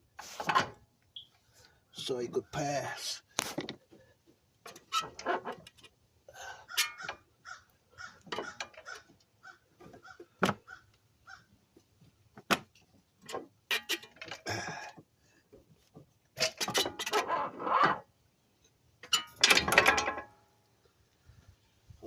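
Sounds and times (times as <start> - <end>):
metal clinks and scrapes: 4.7 - 7.2, 13.3 - 14.6, 16.4 - 18.0, 19.0 - 20.4.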